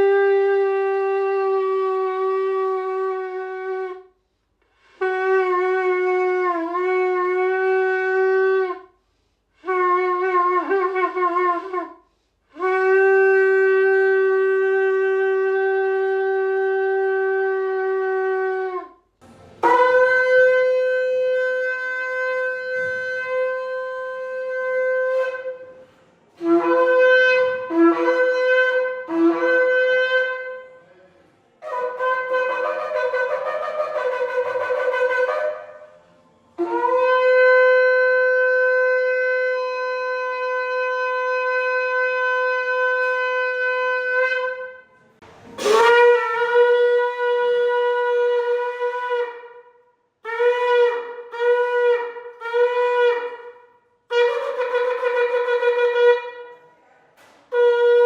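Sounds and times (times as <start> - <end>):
ram's horn blowing: 19.6 - 31.0, 31.6 - 49.6, 50.2 - 56.7, 57.5 - 58.0.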